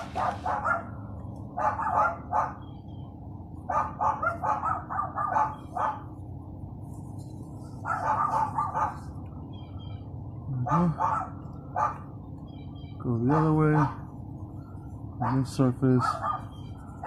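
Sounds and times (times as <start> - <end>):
dogs barking: 0.0 - 2.8, 3.6 - 6.2, 7.7 - 9.2, 10.6 - 12.3, 13.1 - 14.2, 15.1 - 17.0.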